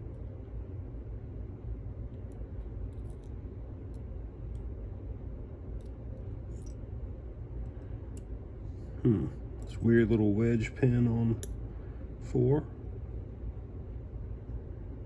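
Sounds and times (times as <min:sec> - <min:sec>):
steady low hum: 0:00.0 - 0:15.0
small metal clicks: 0:05.8 - 0:06.8.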